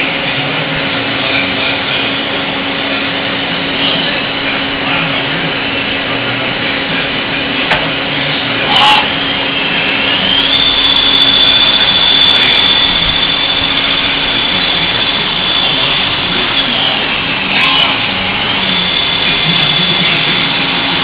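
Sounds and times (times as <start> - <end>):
machine high whine: 0.0 - 21.0
steady machine hiss: 9.7 - 21.0.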